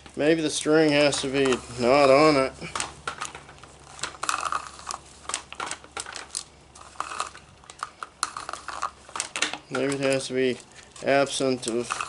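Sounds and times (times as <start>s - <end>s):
plastic clicks and rattles: 2.7s - 10.2s.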